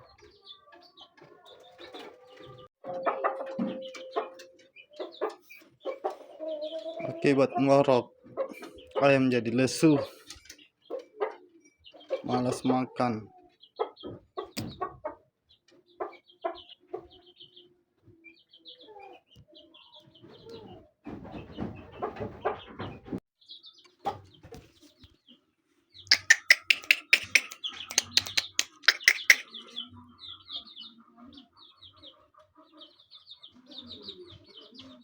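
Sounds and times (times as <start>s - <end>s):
chickens clucking: 0.0s - 35.0s
quick sharp taps: 26.1s - 29.5s.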